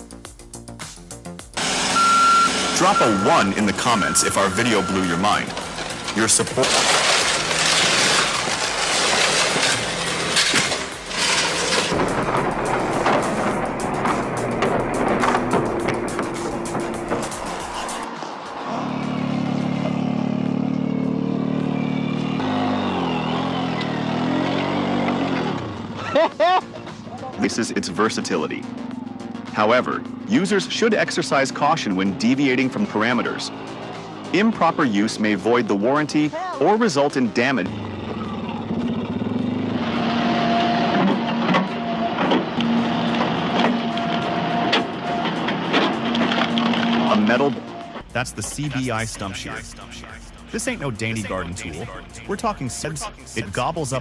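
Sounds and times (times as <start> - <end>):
machine humming: 1.6 - 19.6
machine engine humming: 1.6 - 26.2, 37.6 - 51.8
sharp cracks: 2.8 - 18.1.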